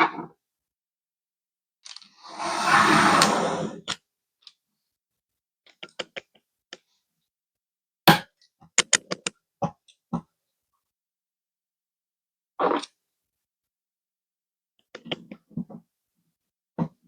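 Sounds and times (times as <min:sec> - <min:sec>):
computer parts rustling and sliding: 0:01.9 - 0:03.8.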